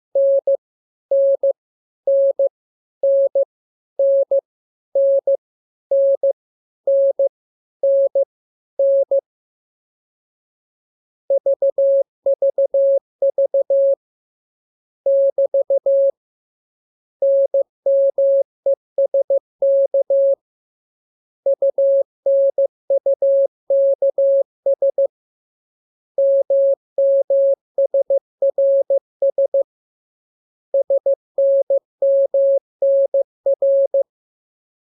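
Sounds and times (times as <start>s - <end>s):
morse code tone: 21.5s - 25.1s, 26.2s - 29.6s, 30.8s - 34.0s.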